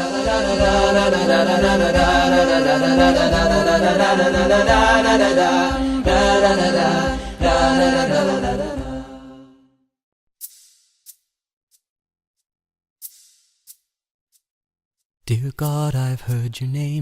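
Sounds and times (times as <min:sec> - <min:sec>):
soft low beat: 0:00.0 - 0:09.2
unaccompanied chanted singing: 0:00.0 - 0:09.5.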